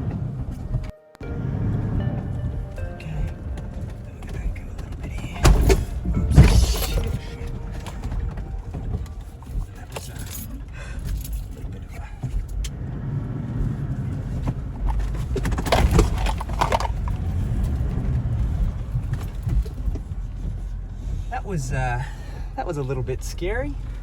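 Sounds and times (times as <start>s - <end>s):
vehicle jolts and knocks: 0.0s - 21.4s
engine and drivetrain rumble: 0.0s - 24.0s
loose gear rattling: 3.2s - 12.7s, 14.2s - 21.3s.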